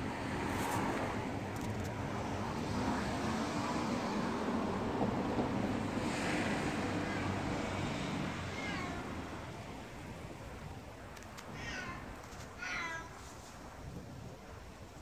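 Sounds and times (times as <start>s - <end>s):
cat meowing: 8.4s - 9.3s, 11.5s - 13.2s.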